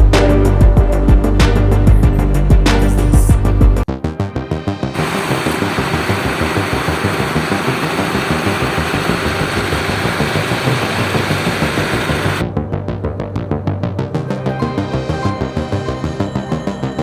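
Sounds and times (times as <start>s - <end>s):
engine running steadily: 5.0s - 12.4s
hiss: 5.0s - 12.4s.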